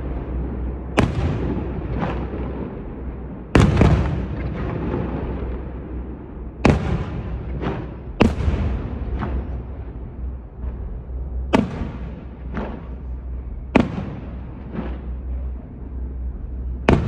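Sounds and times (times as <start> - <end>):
fireworks exploding: 0.0 - 17.0.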